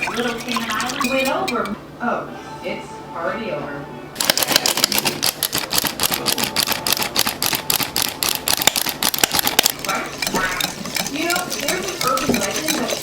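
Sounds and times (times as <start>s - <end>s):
whisk clicking against bowl: 4.2s - 13.0s.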